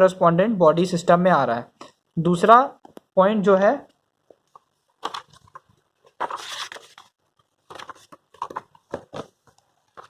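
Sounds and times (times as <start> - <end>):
rustling and crinkling: 4.3 - 10.0.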